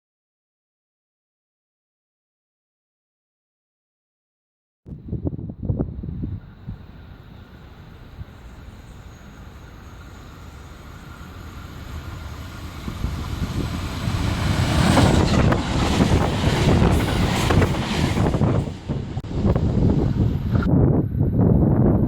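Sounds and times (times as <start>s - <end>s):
wind buffeting microphone: 4.9s - 22.0s
electric train passing: 5.1s - 21.5s
wheels clattering on rails: 7.4s - 20.7s.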